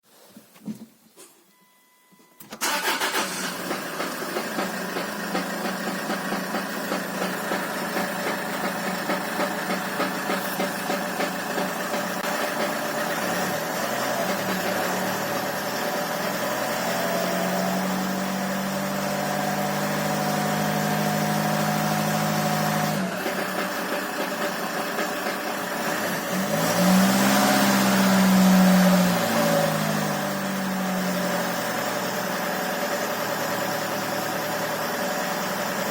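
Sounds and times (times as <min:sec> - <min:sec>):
diesel engine running and revving: 0:02.6 - 0:35.9
rapid engine knock: 0:03.6 - 0:13.5, 0:14.2 - 0:15.0, 0:23.1 - 0:25.9.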